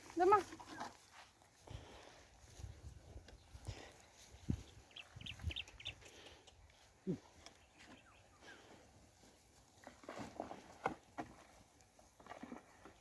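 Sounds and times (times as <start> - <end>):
short high animal chirps: 4.9 - 6.1.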